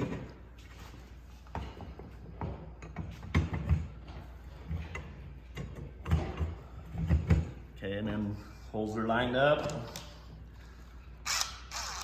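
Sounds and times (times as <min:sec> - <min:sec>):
tool parts knocking and clattering: 0:00.0 - 0:00.4, 0:01.5 - 0:07.6.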